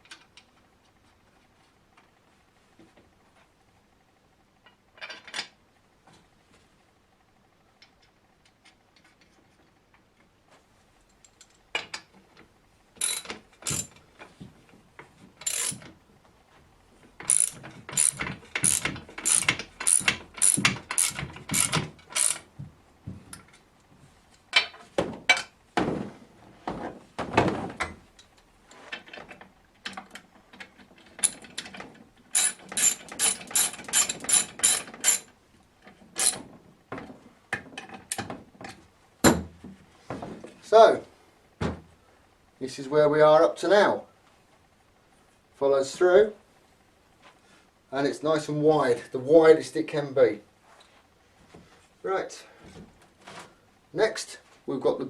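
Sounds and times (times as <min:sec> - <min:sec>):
ratchet wrench clicking: 0:13.0 - 0:13.9, 0:15.4 - 0:15.8, 0:17.3 - 0:22.4, 0:32.3 - 0:35.3.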